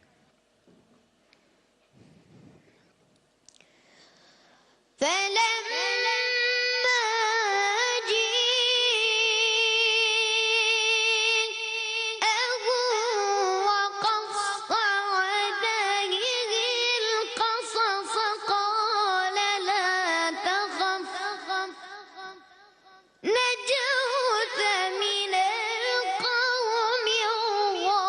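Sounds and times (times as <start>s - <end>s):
high solo voice chanting: 5.0s - 7.2s.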